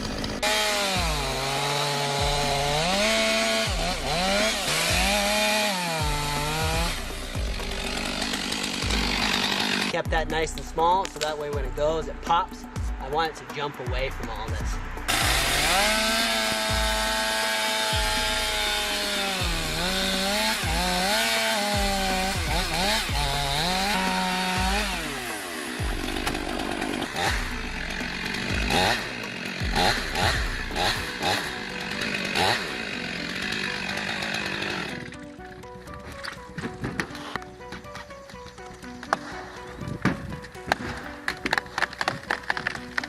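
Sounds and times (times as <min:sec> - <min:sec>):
chainsaw cutting at high revs: 0:00.0 - 0:10.1, 0:15.1 - 0:35.4
sharp cracks and knocks: 0:39.9 - 0:43.0.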